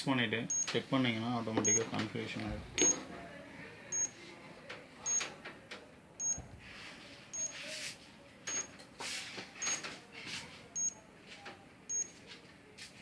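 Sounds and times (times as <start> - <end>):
alarm panel high-pitched beeps: 0.4 - 0.8, 1.6 - 2.0, 2.8 - 3.0, 3.9 - 4.2, 5.1 - 5.3, 6.2 - 6.5, 7.3 - 7.6, 8.5 - 8.7, 10.8 - 11.0, 11.9 - 12.2.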